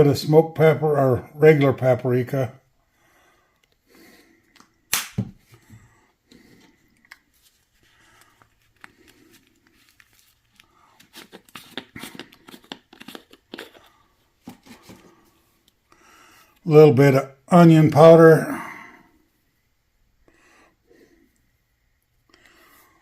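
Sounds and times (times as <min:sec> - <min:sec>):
spice containers clicking and rustling: 0:08.2 - 0:15.1.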